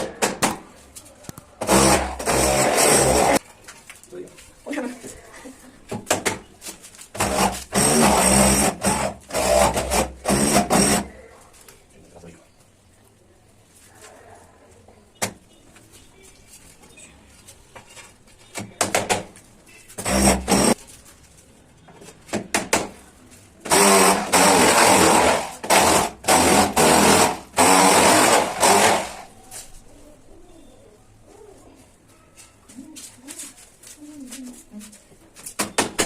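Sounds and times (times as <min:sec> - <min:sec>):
harsh noise bursts: 0:01.6 - 0:03.4, 0:07.2 - 0:11.2, 0:20.0 - 0:20.8, 0:23.6 - 0:29.3.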